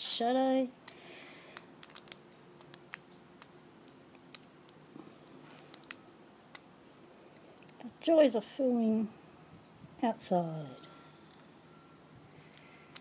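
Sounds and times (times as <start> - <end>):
lock pick clicking in padlock: 1.6 - 3.5, 4.2 - 6.6, 12.4 - 13.0.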